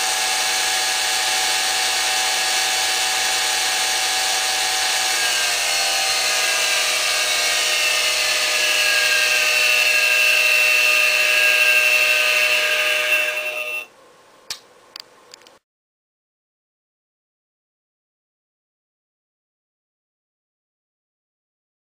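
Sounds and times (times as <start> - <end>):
milling machine high whine: 0.0 - 13.9.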